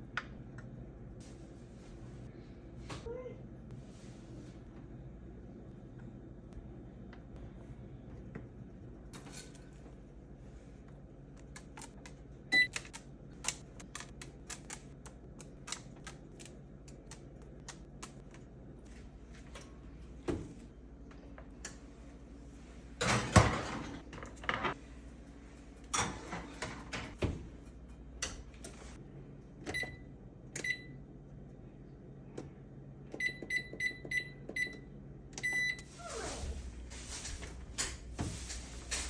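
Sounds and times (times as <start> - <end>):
steady low hum: 0.0 - 39.0
kitchen clatter and knocks: 23.0 - 24.8
oven control panel beeps: 29.6 - 31.0, 33.1 - 35.9.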